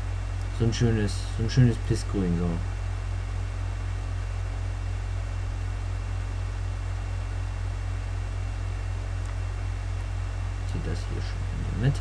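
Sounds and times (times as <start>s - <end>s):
low electrical hum: 0.0s - 12.0s.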